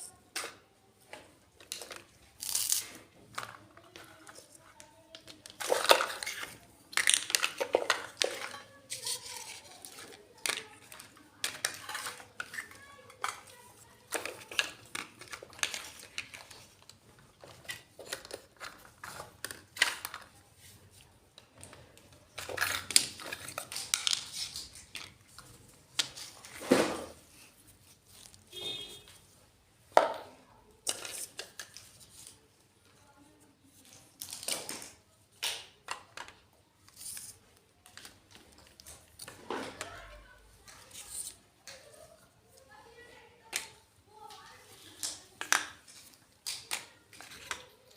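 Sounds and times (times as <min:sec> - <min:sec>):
small toy dishes clinking: 0:01.6 - 0:20.4.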